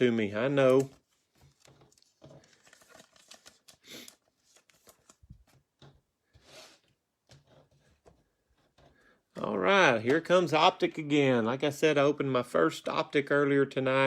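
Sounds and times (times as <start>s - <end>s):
cards and packaging rustling: 0.0s - 11.0s.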